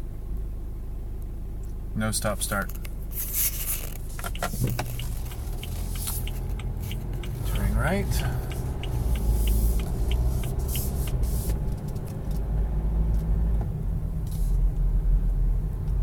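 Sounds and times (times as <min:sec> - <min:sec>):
engine rumble and road noise: 0:00.0 - 0:16.0
turn signal ticking: 0:04.0 - 0:16.0.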